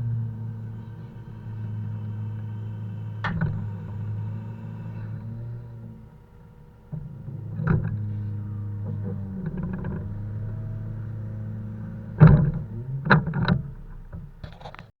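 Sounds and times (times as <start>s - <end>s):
diesel truck engine running: 0.0s - 14.8s
logs knocking and clunking: 12.1s - 14.9s.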